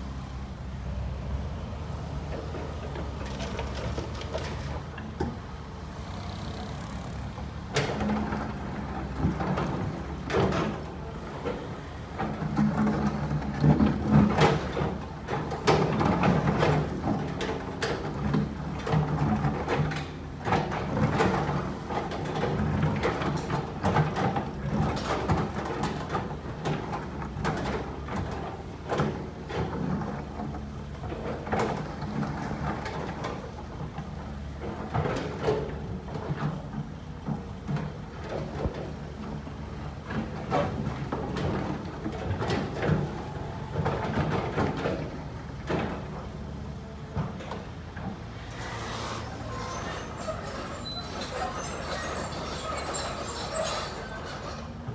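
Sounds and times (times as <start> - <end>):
excavator diesel engine running: 20.6 - 54.9.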